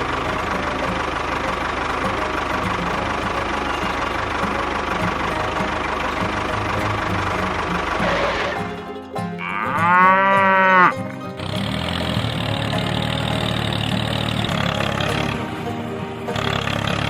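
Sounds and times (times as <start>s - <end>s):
steady background noise: 0.0s - 17.0s
cow mooing: 9.4s - 10.9s.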